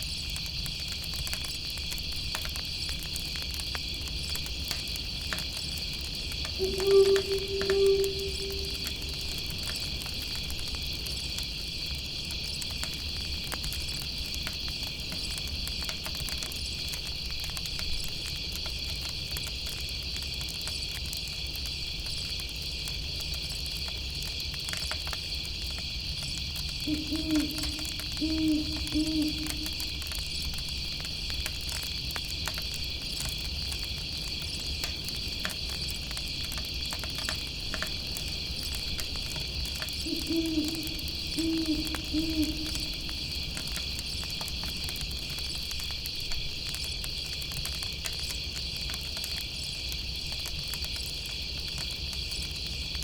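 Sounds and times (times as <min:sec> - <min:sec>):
faint campfire crackles: 0:00.0 - 0:53.0
insects chirping: 0:04.2 - 0:11.2, 0:25.9 - 0:53.0
owl hooting: 0:06.6 - 0:09.9, 0:26.8 - 0:30.3, 0:40.0 - 0:43.8.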